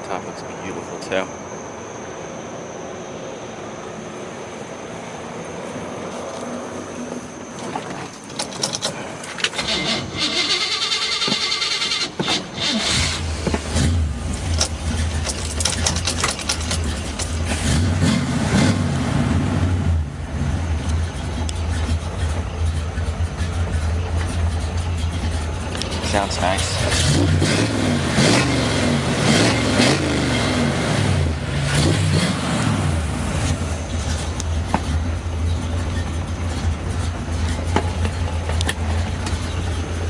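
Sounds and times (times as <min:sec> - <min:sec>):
starter cranking engine: 0:08.2 - 0:17.8
car engine deep rumble: 0:12.9 - 0:40.0.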